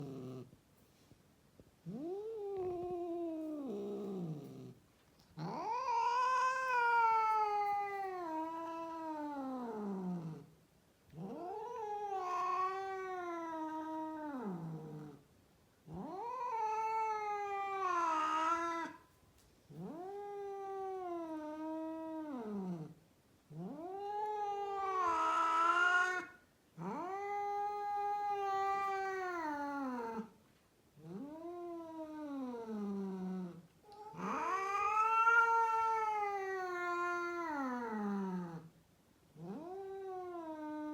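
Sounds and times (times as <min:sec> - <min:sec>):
cat yowling: 0:05.4 - 0:09.8, 0:11.2 - 0:14.6, 0:16.0 - 0:19.0, 0:23.6 - 0:30.3, 0:34.0 - 0:38.5.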